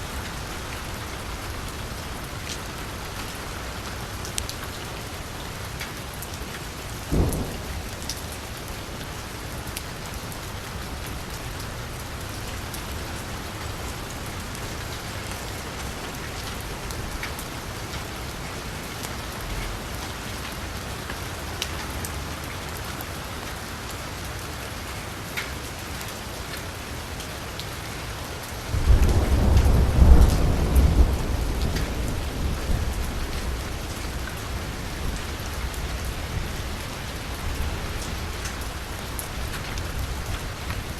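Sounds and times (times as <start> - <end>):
rain falling on a street: 0.0 - 40.9
deep rumble of thunder: 7.0 - 10.3, 28.7 - 38.2.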